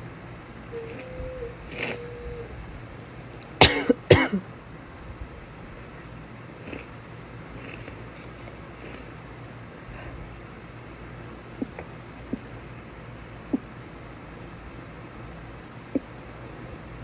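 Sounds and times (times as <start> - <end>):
low fan hum: 0.0 - 17.0
faint breaths: 0.8 - 2.3, 6.6 - 6.9, 7.6 - 10.4
woman sneezing: 3.6 - 4.4.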